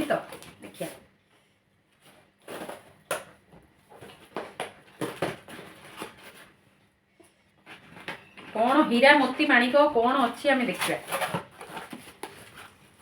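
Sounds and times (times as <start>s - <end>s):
packaging rustling and crinkling: 2.0s - 3.2s, 7.6s - 13.0s.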